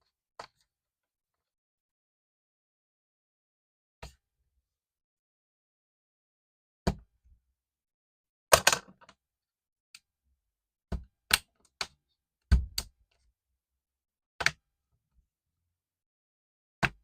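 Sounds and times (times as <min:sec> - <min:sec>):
sharp clicks and knocks of laptop parts: 0:08.5 - 0:09.2, 0:10.9 - 0:13.2, 0:14.4 - 0:14.7.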